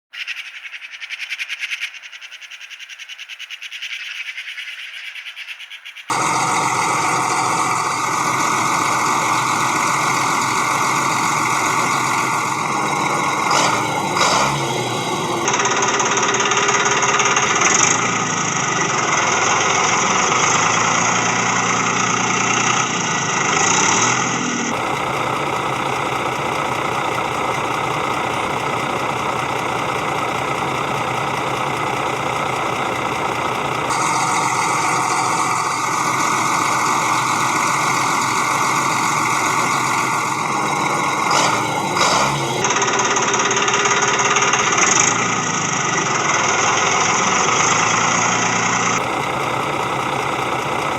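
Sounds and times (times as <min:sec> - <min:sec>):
small motor rattling: 0:06.1 - 0:50.9.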